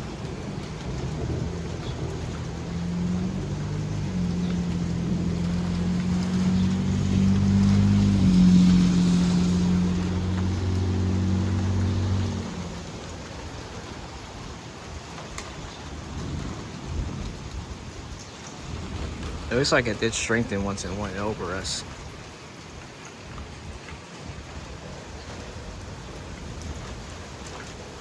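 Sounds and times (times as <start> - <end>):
low droning thunder rumble: 0.0 - 14.3
rain falling: 0.0 - 28.0.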